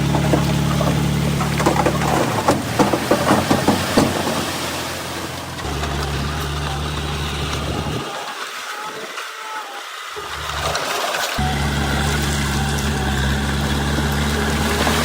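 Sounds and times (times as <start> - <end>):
rattling knocks: 0.0 - 4.8
heavy diesel machinery running: 0.0 - 8.2, 10.2 - 15.0.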